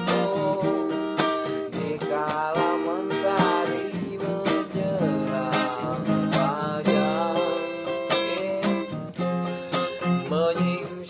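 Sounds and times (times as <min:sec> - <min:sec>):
acoustic guitar strumming: 0:00.0 - 0:11.0
person singing: 0:00.0 - 0:11.0.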